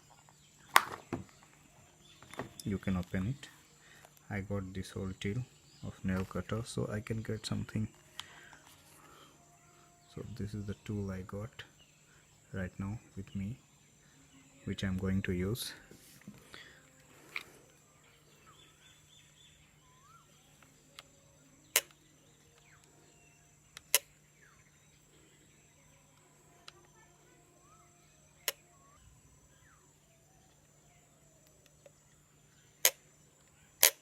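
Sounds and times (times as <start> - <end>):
faint bird chirps: 0.0 - 34.0
sharp metal tool clicks: 33.8 - 34.0.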